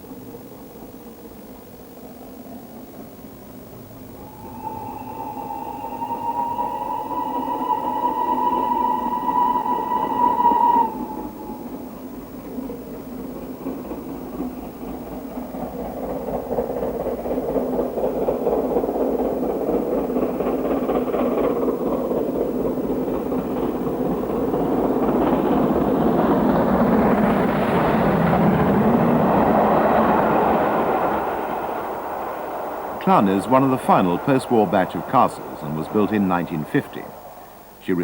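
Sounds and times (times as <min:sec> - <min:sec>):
steam locomotive working: 0:00.0 - 0:38.0.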